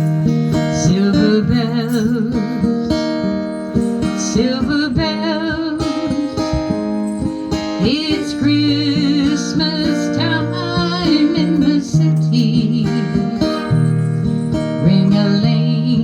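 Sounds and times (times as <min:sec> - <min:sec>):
acoustic guitar strumming: 0:00.0 - 0:16.0
person singing with vibrato: 0:00.0 - 0:16.0.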